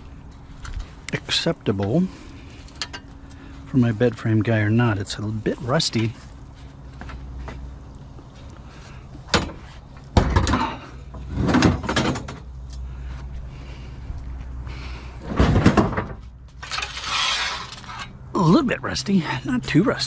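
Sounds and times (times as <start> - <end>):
metal frame scraping: 15.2 - 18.2.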